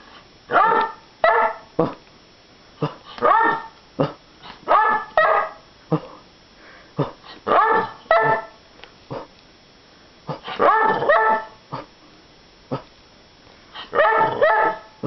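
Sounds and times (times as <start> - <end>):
dog barking and yipping: 0.5 - 1.7, 3.2 - 3.7, 4.7 - 5.6, 7.5 - 8.6, 10.5 - 11.6, 13.9 - 15.0.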